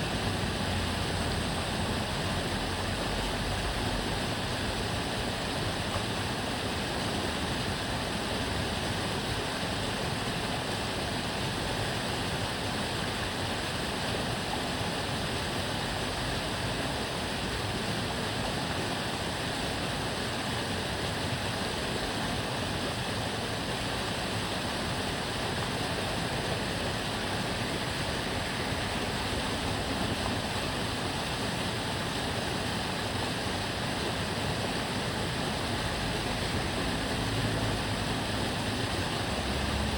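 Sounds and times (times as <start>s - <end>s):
canal water flowing and babbling: 0.0s - 39.9s.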